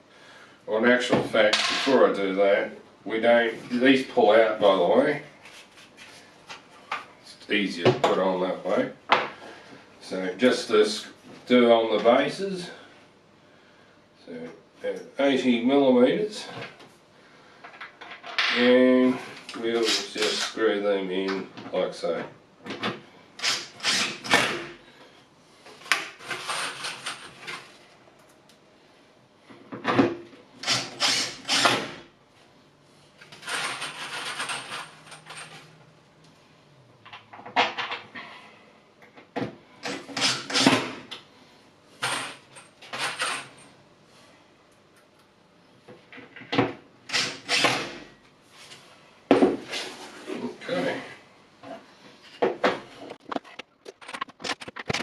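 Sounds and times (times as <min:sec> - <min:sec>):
power drill driving screws: 0:23.4 - 0:24.7, 0:30.6 - 0:32.0, 0:39.9 - 0:41.0, 0:47.1 - 0:48.0.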